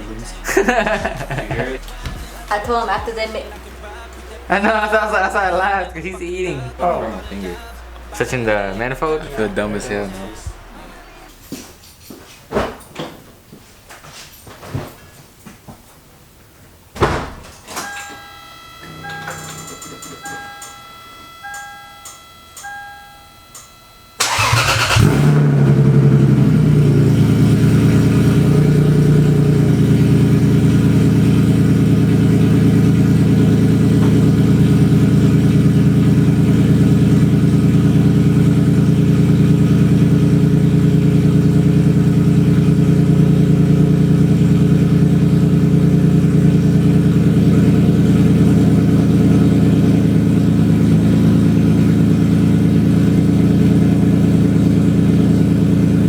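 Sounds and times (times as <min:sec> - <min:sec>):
car engine starting and idling: 0:00.0 - 0:11.6, 0:17.7 - 0:56.0.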